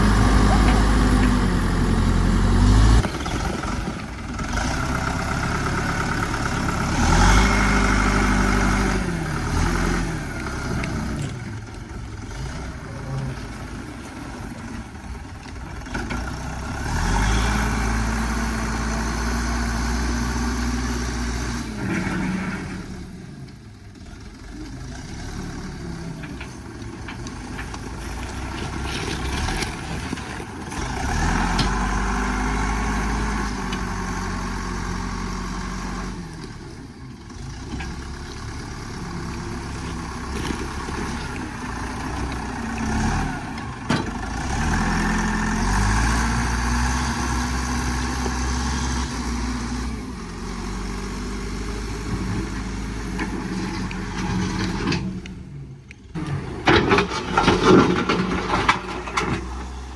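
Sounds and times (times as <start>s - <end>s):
vehicle engine revving: 0.0s - 3.8s, 4.4s - 11.4s, 16.0s - 23.2s, 37.3s - 55.4s
knocks and rattles: 56.2s - 59.8s.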